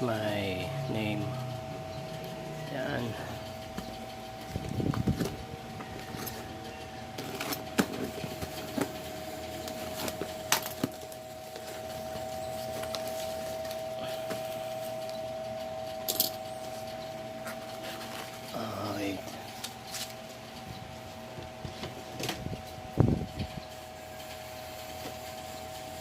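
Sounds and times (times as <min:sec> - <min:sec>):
steady high hum: 0:00.0 - 0:26.0
cardboard package clicks and rustles: 0:07.2 - 0:15.2.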